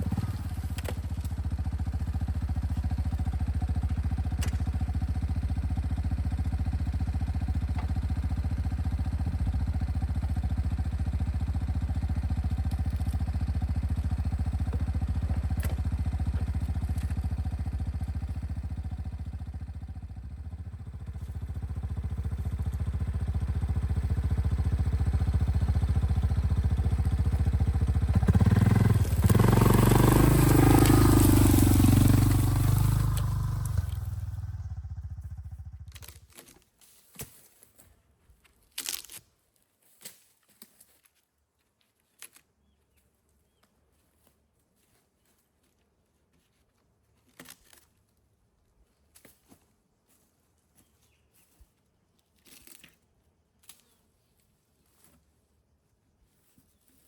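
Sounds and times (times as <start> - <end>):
engine running: 0.0 - 36.2.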